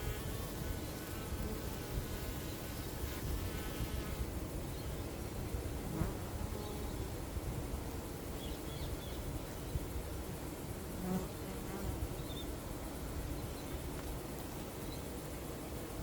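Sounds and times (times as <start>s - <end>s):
bees buzzing: 0.0s - 4.3s
bee buzzing close by: 0.0s - 4.4s, 5.7s - 7.0s, 10.7s - 12.4s.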